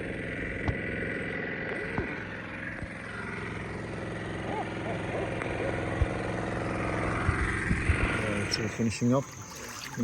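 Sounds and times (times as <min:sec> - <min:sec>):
dredge engine running: 0:00.0 - 0:10.0.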